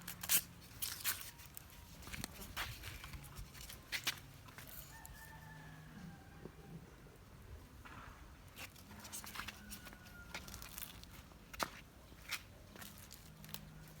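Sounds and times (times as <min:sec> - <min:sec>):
faint rooster crowing: 0:04.6 - 0:07.1, 0:08.9 - 0:11.1.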